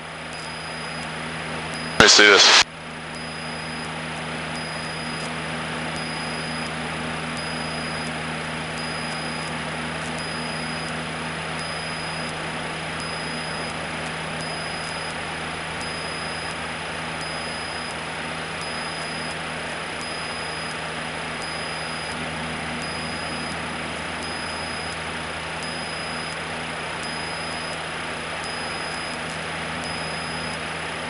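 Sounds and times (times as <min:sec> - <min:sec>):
faint high beep: 0:00.4 - 0:01.0, 0:01.8 - 0:02.6, 0:03.2 - 0:03.9, 0:04.6 - 0:05.3, 0:06.0 - 0:06.7, 0:07.4 - 0:08.1, 0:08.8 - 0:09.5, 0:10.2 - 0:10.9, 0:11.6 - 0:12.3, 0:13.0 - 0:13.7, 0:14.4 - 0:15.1, 0:15.8 - 0:16.5, 0:17.2 - 0:18.0, 0:18.6 - 0:19.4, 0:20.0 - 0:20.7, 0:21.4 - 0:22.2, 0:22.8 - 0:23.6, 0:24.2 - 0:25.0, 0:25.6 - 0:26.4, 0:27.0 - 0:27.8, 0:28.5 - 0:29.2, 0:29.8 - 0:30.6.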